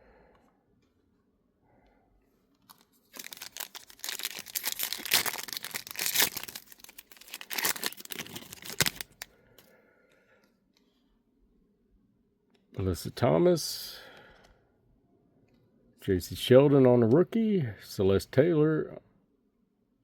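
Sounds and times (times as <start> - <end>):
wrapper tearing and crinkling: 2.7 - 9.3.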